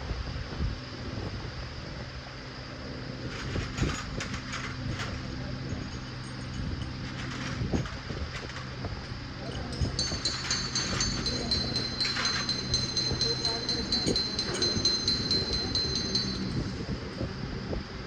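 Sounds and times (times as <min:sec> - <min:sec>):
motor humming: 0:03.5 - 0:17.7.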